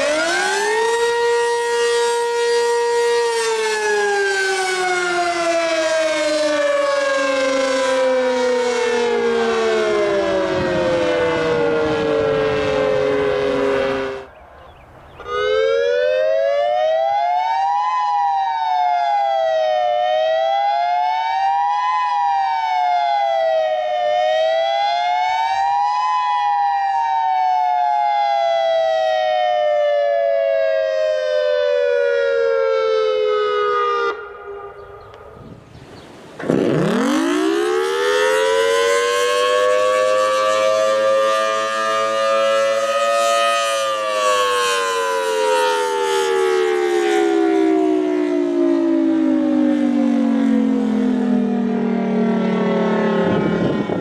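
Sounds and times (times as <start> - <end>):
two-tone warning siren rising and falling: 0.0 - 14.6, 15.2 - 54.0
siren winding up to high tone: 15.2 - 18.2, 36.4 - 44.7, 51.4 - 54.0.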